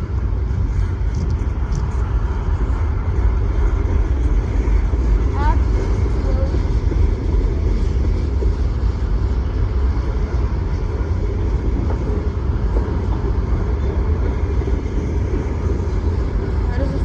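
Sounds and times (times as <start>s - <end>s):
train wheels clattering on rails: 0.0s - 17.0s.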